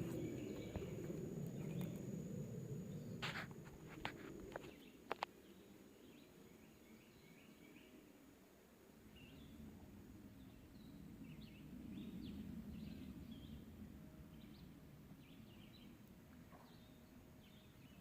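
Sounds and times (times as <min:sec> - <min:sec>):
songbird chirps: 0:00.0 - 0:02.2, 0:02.8 - 0:08.4, 0:09.0 - 0:18.0
low steady rumble: 0:00.0 - 0:04.5.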